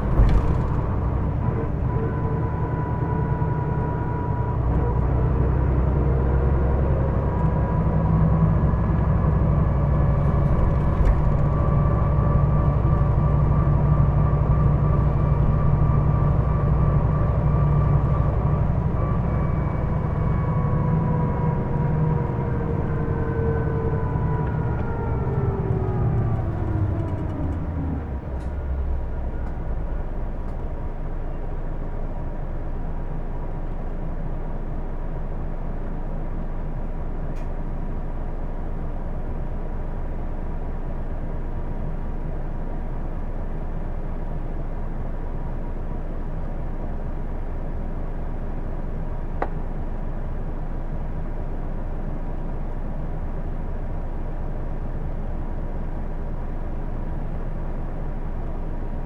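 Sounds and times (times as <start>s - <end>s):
bus whining tone: 0.0s - 31.9s
bus engine rumble: 0.0s - 59.0s.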